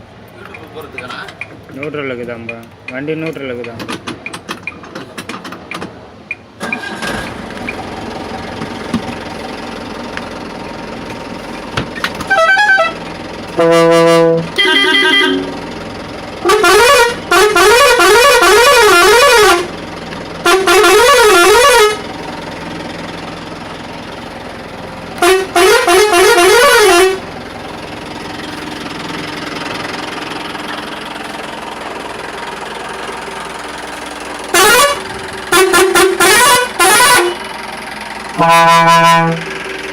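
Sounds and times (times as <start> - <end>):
van engine idling: 0.0 - 39.9
air horn blasts: 12.2 - 13.0, 13.6 - 15.6, 16.4 - 19.7, 20.4 - 22.0, 25.2 - 27.2, 34.5 - 37.4, 38.4 - 39.5.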